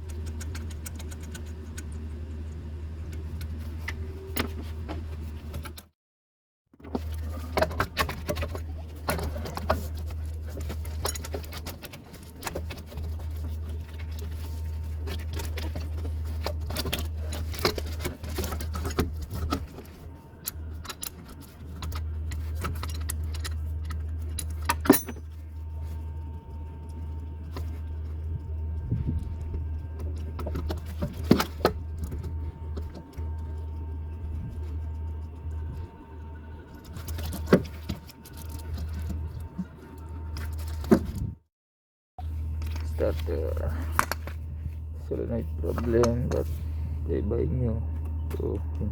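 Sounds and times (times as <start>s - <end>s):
steady low hum: 0.0s - 5.8s, 6.9s - 41.4s, 42.2s - 48.9s.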